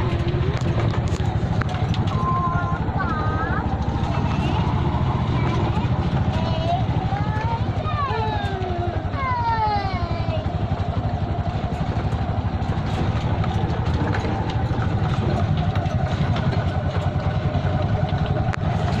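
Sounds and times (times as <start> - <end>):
engine running steadily: 0.0 - 19.0.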